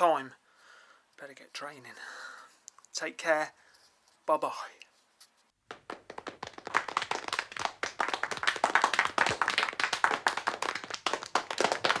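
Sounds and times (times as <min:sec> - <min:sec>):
many hands clapping: 0:05.7 - 0:12.0.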